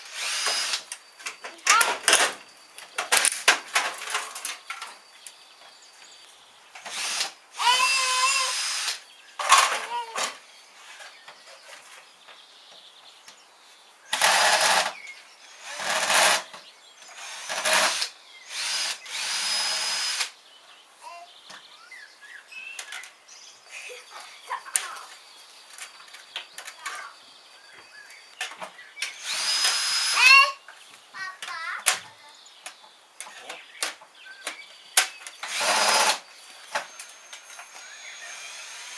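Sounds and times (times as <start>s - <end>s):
cordless drill running: 0.0s - 0.8s, 6.9s - 9.0s, 14.1s - 14.9s, 15.6s - 16.5s, 17.2s - 20.3s, 29.1s - 30.4s, 35.4s - 36.2s, 36.8s - 38.9s.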